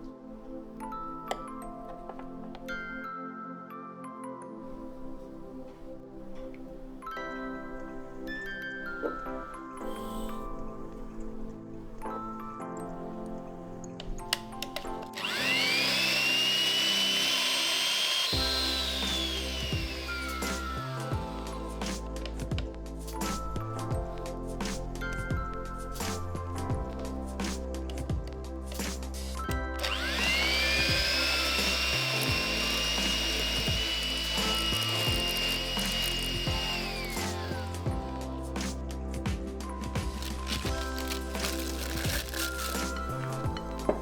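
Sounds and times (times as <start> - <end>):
background music: 0.0 - 44.0
electric mixer motor whining: 14.7 - 21.8, 29.8 - 38.3, 40.1 - 44.0.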